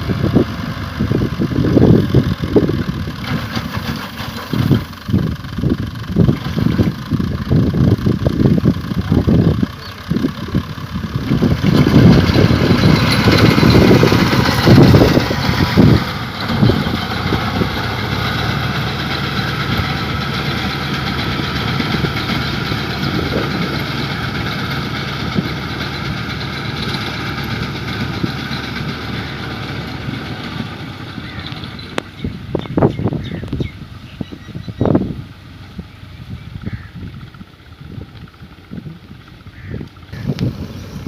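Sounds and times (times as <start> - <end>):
harvester diesel engine running: 0.0 - 41.0.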